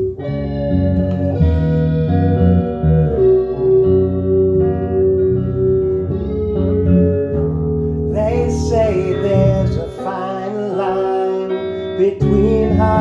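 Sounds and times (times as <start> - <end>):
guitar-led song: 0.0 - 13.0
person singing: 8.1 - 13.0.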